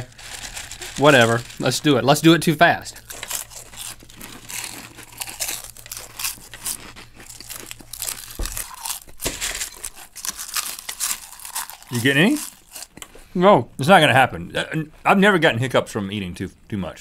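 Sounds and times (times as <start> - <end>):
food crunching and crinkling: 0.0 - 13.3.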